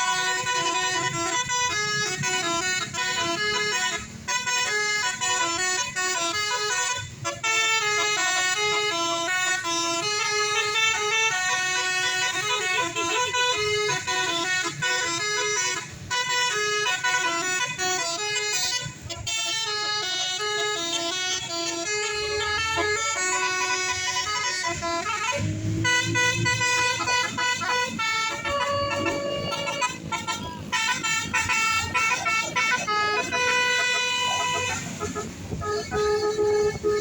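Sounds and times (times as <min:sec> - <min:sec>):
bus horn playing fast tune: 0:00.0 - 0:37.0.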